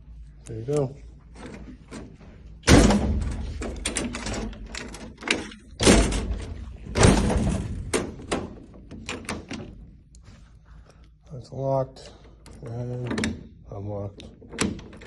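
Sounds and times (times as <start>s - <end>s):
lock and latch clicks: 1.4s - 9.8s, 14.1s - 15.0s
metal door thudding shut: 2.0s - 9.8s.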